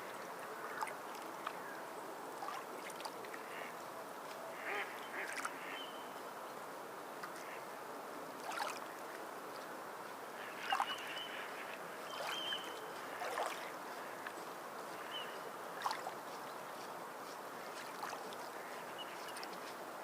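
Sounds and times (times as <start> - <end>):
sharp water splashes: 8.4 - 8.8, 12.1 - 13.7, 15.8 - 16.2
sea water lapping: 8.4 - 9.0, 10.4 - 16.4, 17.6 - 19.7.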